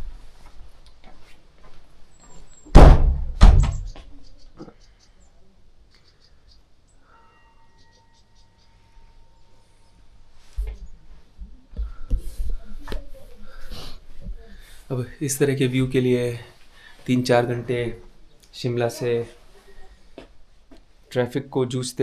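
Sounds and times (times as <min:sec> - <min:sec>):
door thudding: 0:02.7 - 0:04.1.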